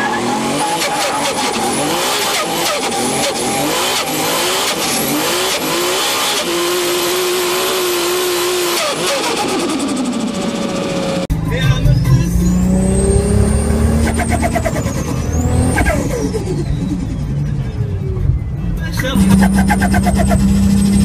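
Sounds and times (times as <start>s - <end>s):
car engine revving: 0.0s - 21.0s
turbo whistle: 19.2s - 21.0s.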